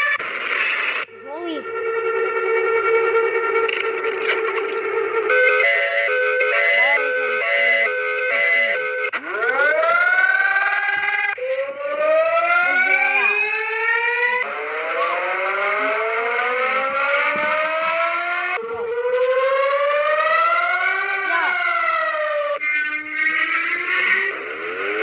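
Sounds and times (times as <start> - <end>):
rising alert siren tone: 1.1 - 25.0.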